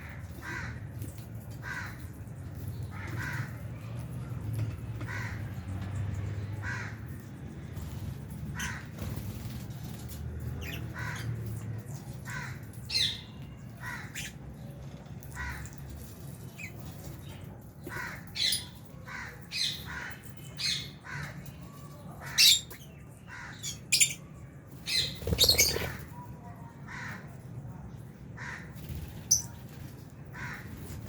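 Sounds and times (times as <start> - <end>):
birds chirping and squawking: 0.0 - 27.5, 28.4 - 31.0.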